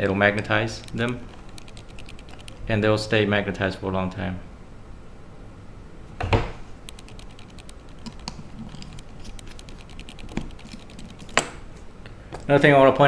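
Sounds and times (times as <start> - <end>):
small tools clicking and tapping: 0.4 - 2.6, 6.9 - 11.6.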